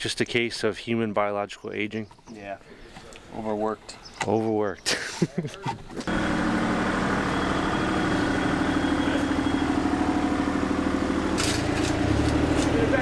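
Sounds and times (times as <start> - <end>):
excavator engine running: 5.6 - 13.0.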